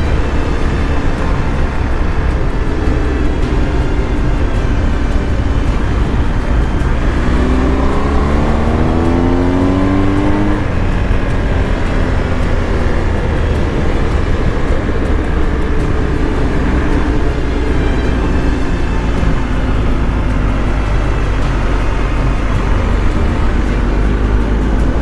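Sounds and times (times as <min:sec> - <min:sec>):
motorcycle engine revving: 0:00.0 - 0:25.0
wind and road noise: 0:00.0 - 0:25.0.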